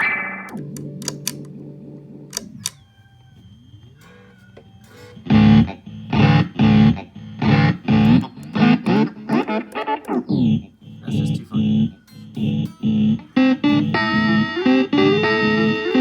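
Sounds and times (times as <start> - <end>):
sharp clicks: 0.0 - 1.6, 2.3 - 2.8, 4.0 - 10.4
electric guitar chord with delay: 11.6 - 16.0.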